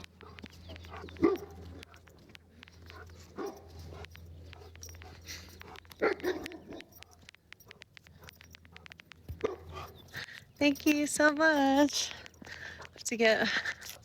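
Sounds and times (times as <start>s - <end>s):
faint clicking: 0.0s - 14.0s
dog barking: 0.1s - 10.1s.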